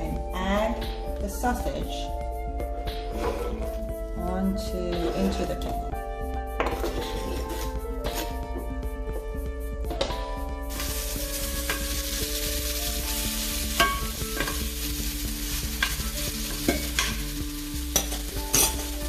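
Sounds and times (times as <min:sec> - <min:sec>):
sausage sizzling in a skillet: 0:10.6 - 0:19.0.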